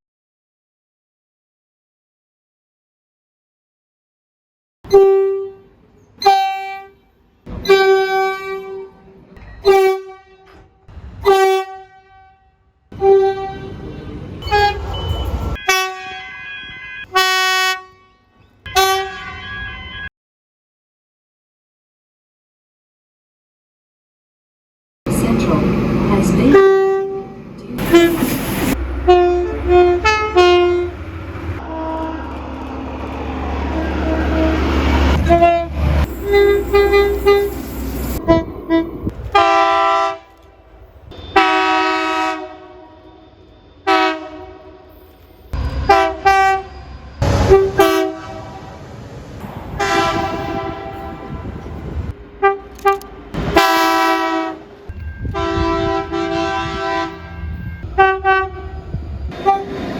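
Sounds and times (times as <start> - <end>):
train horns: 4.9 - 20.1, 25.1 - 59.9
train running rumble: 25.1 - 41.7, 44.9 - 59.9.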